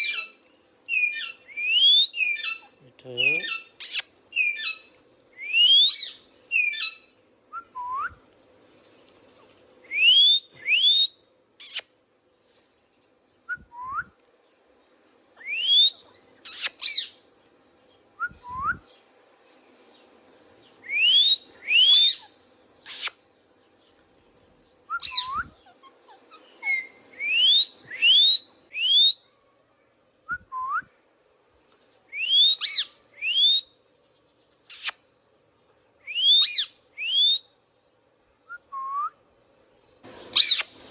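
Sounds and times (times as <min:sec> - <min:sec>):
parakeet whistling and calling: 0:00.0 - 0:08.1, 0:09.9 - 0:11.9, 0:15.4 - 0:17.2, 0:20.8 - 0:23.2, 0:24.9 - 0:29.2, 0:32.1 - 0:33.7, 0:34.7 - 0:35.0, 0:36.0 - 0:37.5, 0:40.3 - 0:40.8.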